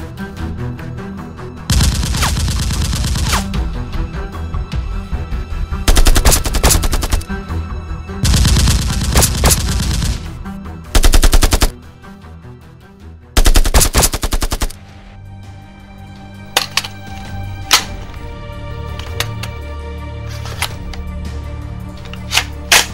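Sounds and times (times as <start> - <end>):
background music: 0.0 - 22.9
machine-gun bursts: 1.7 - 3.5, 5.9 - 7.3, 8.3 - 10.3, 11.0 - 11.7, 13.4 - 14.8.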